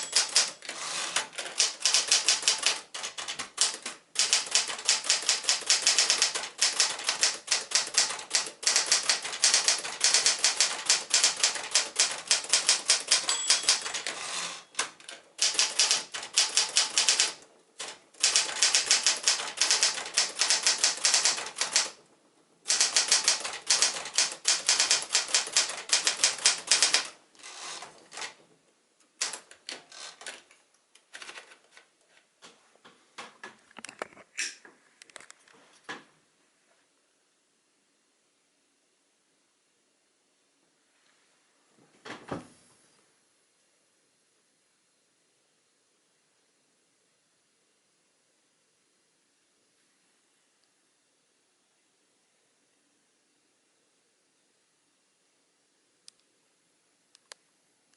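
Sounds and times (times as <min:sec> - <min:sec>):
manual typewriter key strikes: 0:00.0 - 0:14.2, 0:14.8 - 0:22.0, 0:22.7 - 0:27.1, 0:29.2 - 0:30.3.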